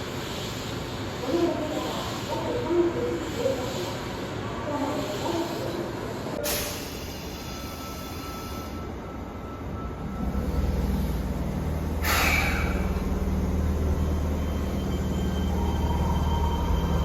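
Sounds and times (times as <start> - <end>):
train equipment low drone: 6.0 - 17.0
short hiss: 12.0 - 12.7.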